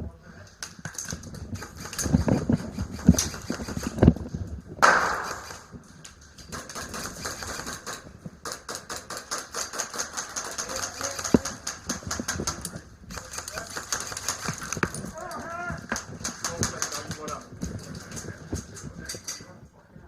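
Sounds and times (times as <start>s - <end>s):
airsoft guns firing bursts: 1.4s - 4.1s, 4.8s - 5.7s, 6.5s - 15.1s, 15.9s - 18.3s.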